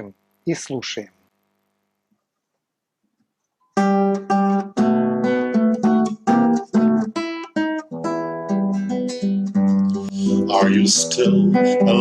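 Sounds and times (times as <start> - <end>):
acoustic guitar strumming chords: 3.7 - 12.0.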